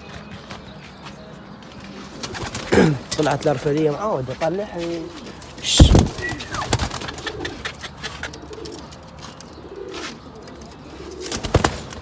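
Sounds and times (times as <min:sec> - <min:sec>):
pigeons cooing: 0:01.9 - 0:04.2, 0:04.8 - 0:12.0.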